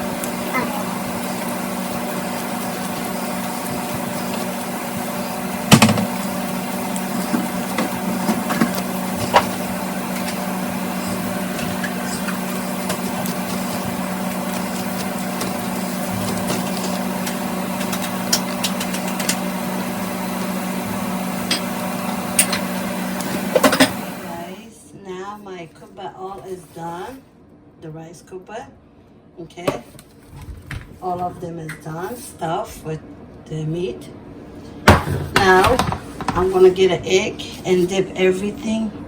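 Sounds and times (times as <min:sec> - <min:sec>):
low machine hum: 0:00.0 - 0:29.4.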